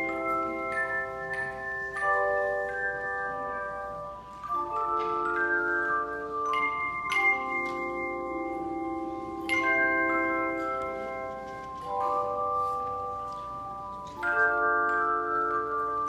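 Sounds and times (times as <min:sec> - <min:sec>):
handbell choir ringing chords: 0:00.0 - 0:16.0.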